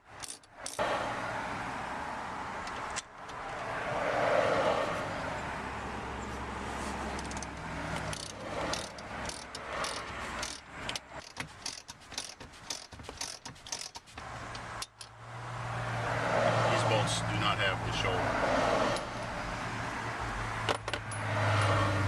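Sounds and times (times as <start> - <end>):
socket ratchet clicking: 0.2 - 0.8, 7.1 - 15.2.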